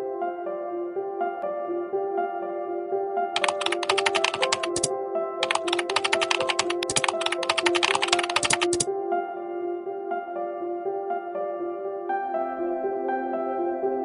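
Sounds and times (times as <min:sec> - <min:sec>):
soft ambient music: 0:00.0 - 0:14.0
keyboard typing clicks: 0:03.4 - 0:08.9.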